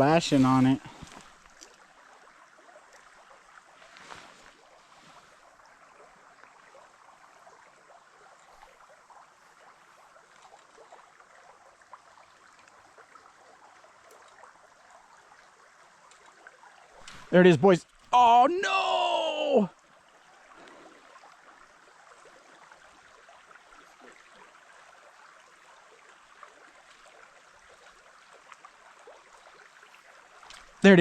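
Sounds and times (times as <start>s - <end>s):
creek water flowing: 0.0s - 31.0s
small ticks: 1.0s - 1.8s, 11.9s - 13.0s, 13.9s - 14.5s, 16.0s - 18.1s, 30.4s - 30.8s.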